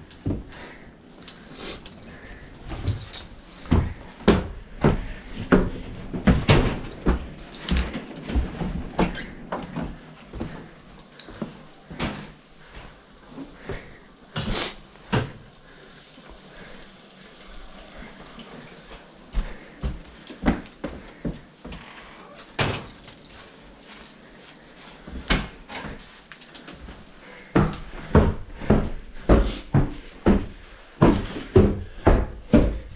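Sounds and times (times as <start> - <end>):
irregular knocks and bumps: 3.6 - 10.7, 26.9 - 32.9
faint steady hiss: 9.8 - 27.9.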